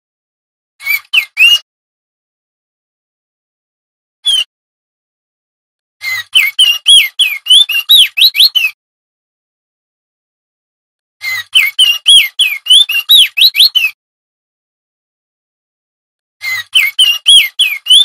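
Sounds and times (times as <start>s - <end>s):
bird singing whistled notes: 0.8s - 1.6s, 4.2s - 4.5s, 6.1s - 8.8s, 11.3s - 14.0s, 16.4s - 18.0s.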